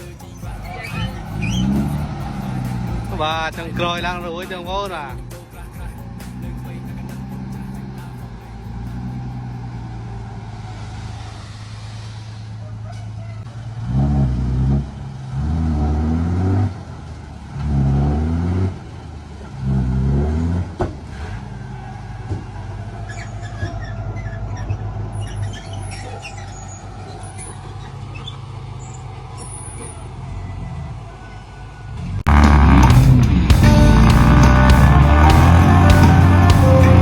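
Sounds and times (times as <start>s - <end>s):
diesel engine revving: 0.0s - 37.0s.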